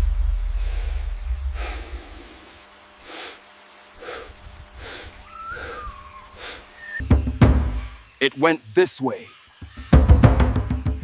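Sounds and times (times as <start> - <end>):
breathy snorts: 0.7 - 3.4, 4.0 - 6.7
faint whistling glide: 5.2 - 7.0.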